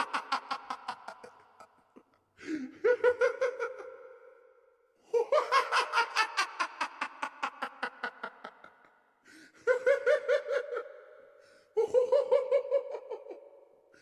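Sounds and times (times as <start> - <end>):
high-pitched giggling laughter: 2.8 - 3.9, 11.8 - 13.4.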